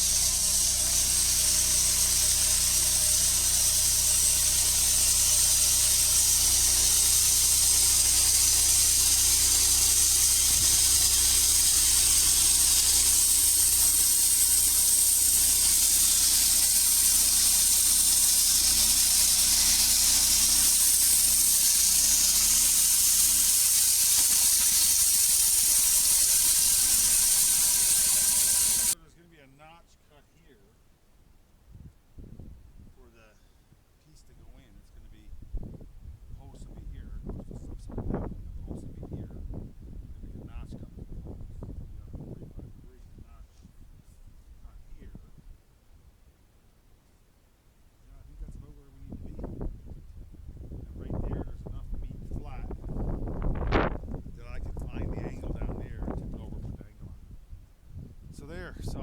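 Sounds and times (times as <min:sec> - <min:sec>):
low engine hum: 0:00.0 - 0:29.0
saw cutting hiss: 0:00.0 - 0:29.0.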